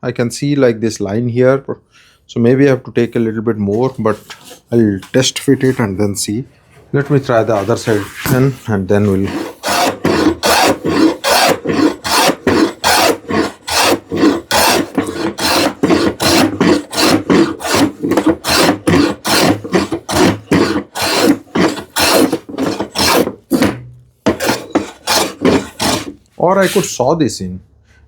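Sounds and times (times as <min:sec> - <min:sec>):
hand plane scraping wood: 0:03.1 - 0:05.9, 0:07.1 - 0:27.0.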